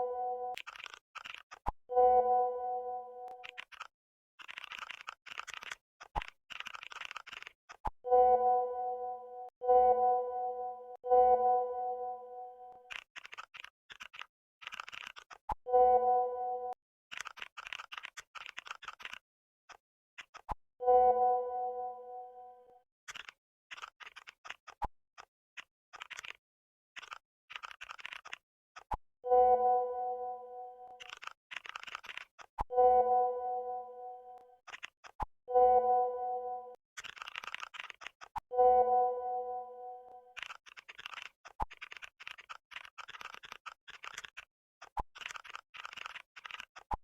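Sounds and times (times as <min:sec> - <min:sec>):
message alert chime: 0:00.0 - 0:00.6, 0:08.1 - 0:12.8, 0:15.7 - 0:16.8, 0:29.3 - 0:31.0, 0:32.8 - 0:34.4, 0:35.5 - 0:36.8, 0:38.6 - 0:40.2
keyboard typing clicks: 0:00.0 - 0:08.2, 0:27.0 - 0:44.4.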